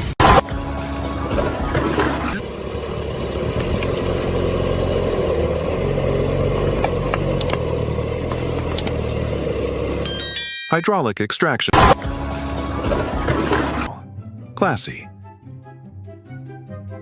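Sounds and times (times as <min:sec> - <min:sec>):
heavy engine running: 0:00.0 - 0:10.5, 0:12.0 - 0:14.0.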